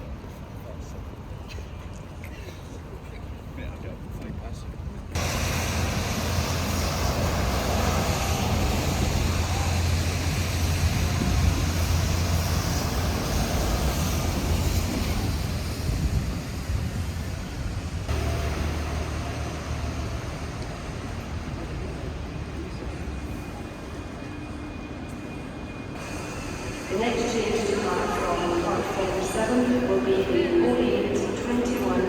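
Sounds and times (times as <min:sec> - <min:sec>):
diesel train engines idling: 0:04.7 - 0:32.0
station noise: 0:18.1 - 0:32.0.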